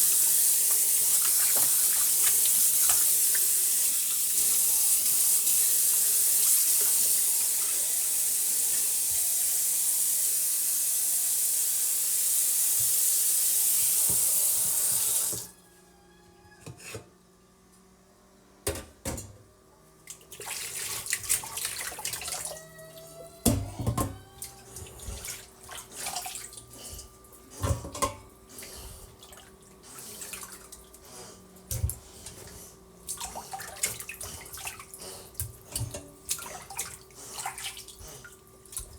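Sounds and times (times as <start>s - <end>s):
tap running into sink: 0.0s - 3.8s, 13.7s - 15.5s
knocks and clinks in sink: 23.4s - 24.2s, 27.6s - 28.3s.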